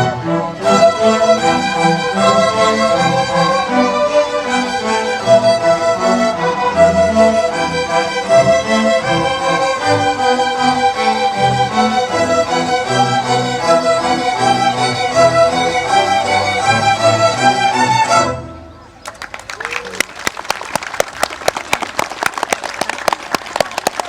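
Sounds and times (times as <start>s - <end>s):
low string notes: 0.0s - 19.0s
violins playing melody: 0.0s - 19.0s.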